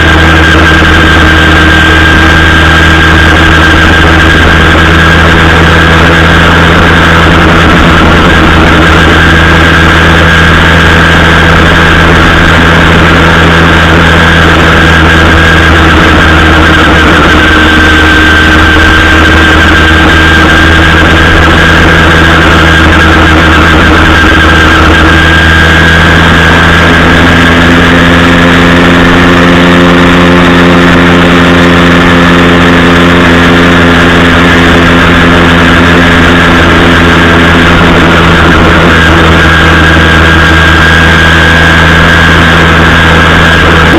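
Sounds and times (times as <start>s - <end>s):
two-stroke engine running loud: 0.0s - 43.9s.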